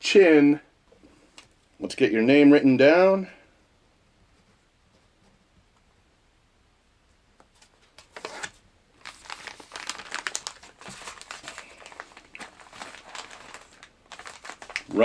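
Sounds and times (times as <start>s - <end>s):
plastic packages crinkling: 7.8s - 15.0s.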